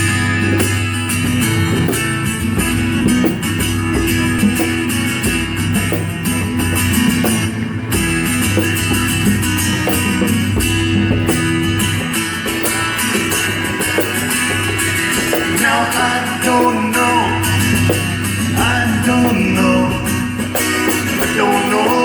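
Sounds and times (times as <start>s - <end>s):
bass line: 0.0s - 21.6s
strummed guitars: 0.0s - 22.0s.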